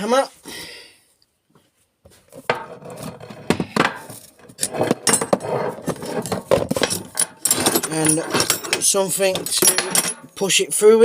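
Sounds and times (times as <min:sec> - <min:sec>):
metal hand tools clattering: 0:03.9 - 0:10.5.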